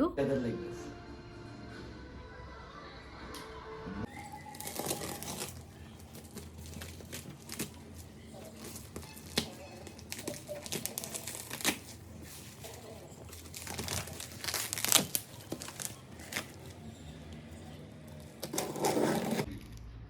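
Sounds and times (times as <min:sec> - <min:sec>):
packaging crinkling and rustling: 0:04.1 - 0:19.8.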